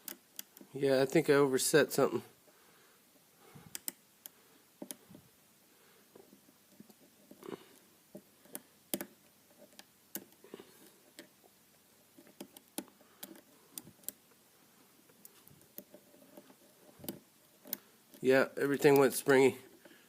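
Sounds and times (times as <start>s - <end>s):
lock pick clicking and scraping: 0.0s - 0.7s, 3.7s - 5.0s, 8.1s - 11.4s, 12.0s - 14.4s, 15.2s - 18.2s.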